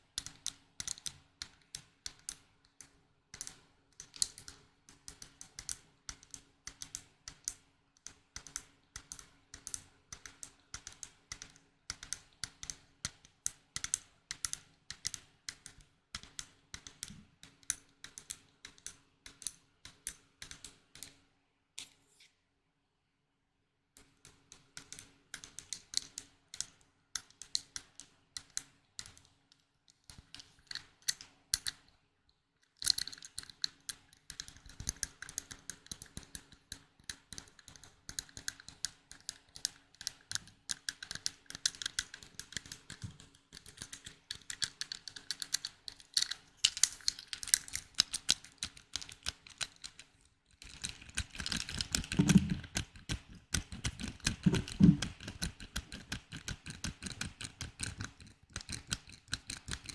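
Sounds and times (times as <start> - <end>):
tapping and clicking on small objects: 24.0 - 31.9, 32.6 - 59.9
rubbing and rustling: 45.9 - 55.4.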